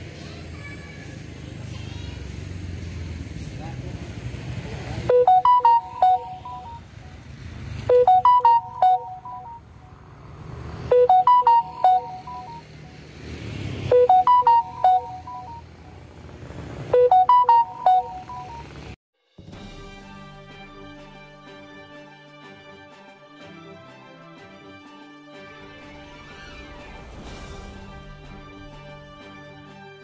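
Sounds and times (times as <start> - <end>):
phone ringtone melody: 5.1 - 7.2, 7.9 - 10.0, 10.9 - 12.8, 13.9 - 16.0, 17.0 - 19.0.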